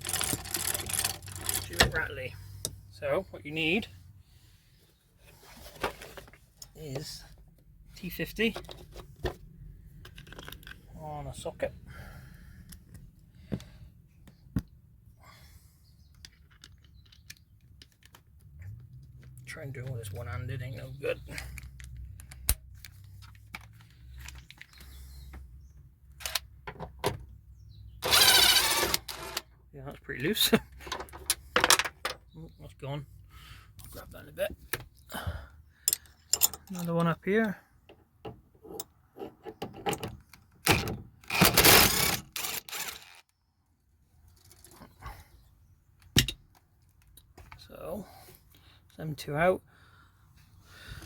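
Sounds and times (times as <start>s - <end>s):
wrench scraping: 0.0s - 2.0s, 28.0s - 29.4s, 41.3s - 43.2s.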